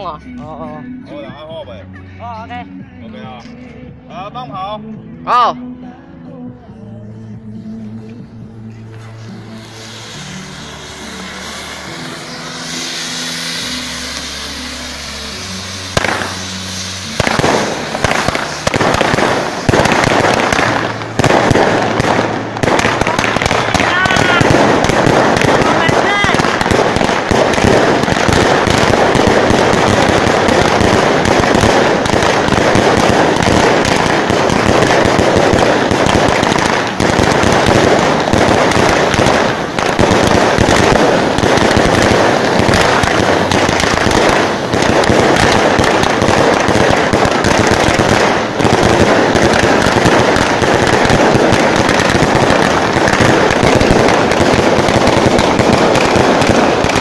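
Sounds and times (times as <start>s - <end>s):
fireworks crackling bangs: 7.4s - 57.0s.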